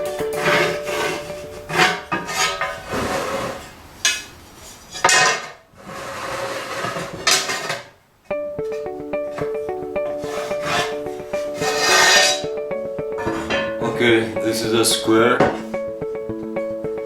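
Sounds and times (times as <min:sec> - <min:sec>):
scraping strokes on ceramic tile: 0:00.3 - 0:07.9, 0:09.4 - 0:12.5, 0:13.2 - 0:13.8.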